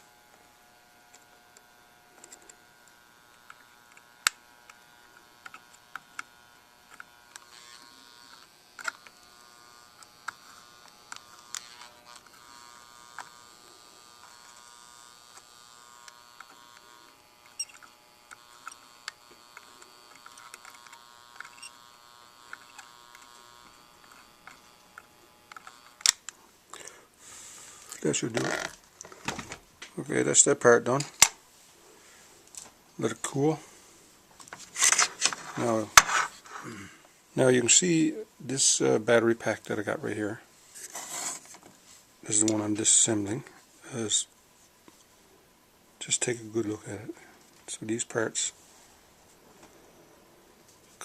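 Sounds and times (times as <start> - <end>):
soldering gun buzzing: 0.0 - 26.4
small clicks: 1.1 - 9.2, 14.2 - 26.4.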